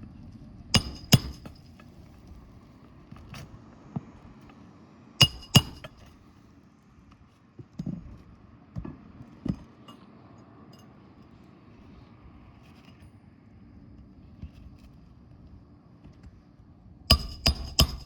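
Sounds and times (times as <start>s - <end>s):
metallic tool clinks: 0.8s - 1.8s, 5.2s - 6.0s.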